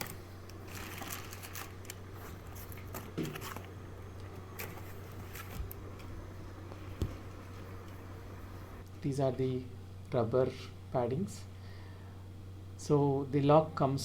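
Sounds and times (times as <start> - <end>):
packaging rustling: 0.0 - 5.9
steady low hum: 0.0 - 14.0.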